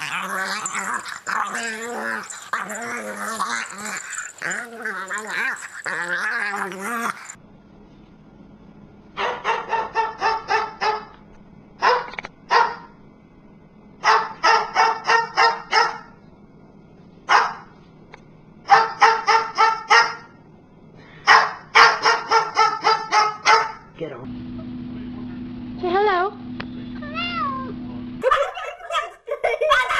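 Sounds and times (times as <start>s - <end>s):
small dog yapping: 18.7s - 20.3s, 21.3s - 23.8s.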